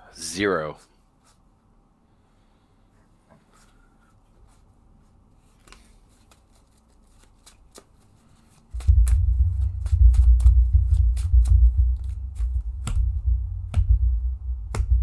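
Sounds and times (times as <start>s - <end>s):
cards being shuffled by hand: 5.3s - 14.0s
loud low rumble: 8.8s - 15.0s.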